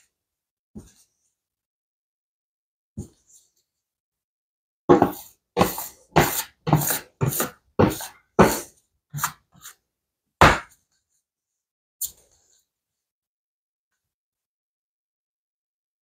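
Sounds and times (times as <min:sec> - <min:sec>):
dough slapped on countertop: 0:10.4 - 0:10.7.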